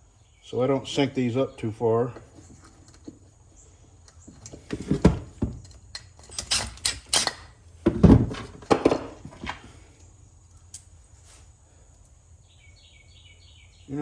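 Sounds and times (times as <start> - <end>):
metal washers clinking: 5.6 - 7.6, 10.6 - 11.0.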